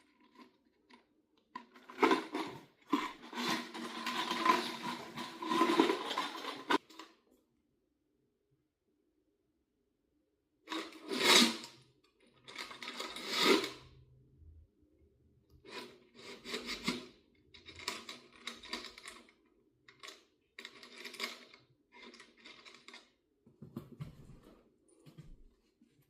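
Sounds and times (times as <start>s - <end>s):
screws rattling in a bucket: 1.6s - 7.0s, 12.4s - 13.8s, 15.7s - 23.1s.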